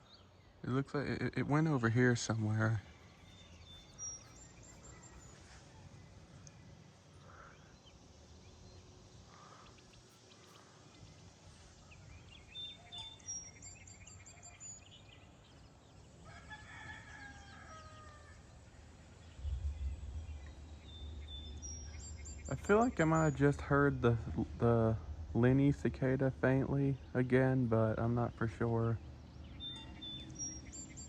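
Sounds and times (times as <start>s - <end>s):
small birds chirping: 0.0s - 31.0s
rooster crowing: 16.2s - 18.6s
low rumble: 19.2s - 28.2s.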